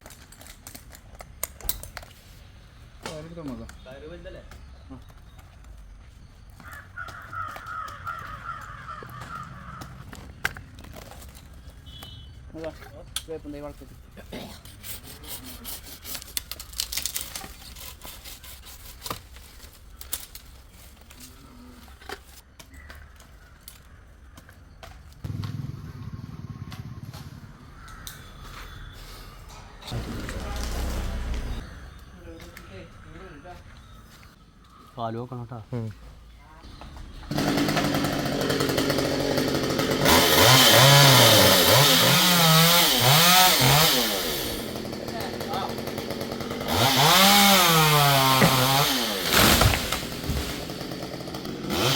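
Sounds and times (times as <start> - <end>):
tree branches rustling and crackling: 0.0 - 14.2, 16.0 - 25.6, 26.8 - 28.9, 29.5 - 35.0, 43.0 - 51.9
chainsaw revving: 25.2 - 27.5, 29.8 - 31.6, 37.2 - 51.9.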